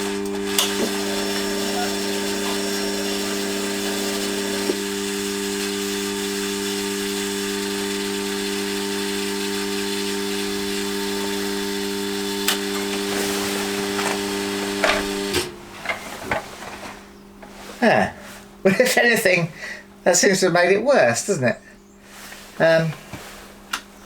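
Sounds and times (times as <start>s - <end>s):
starter motor cranking engine: 0.0s - 15.6s.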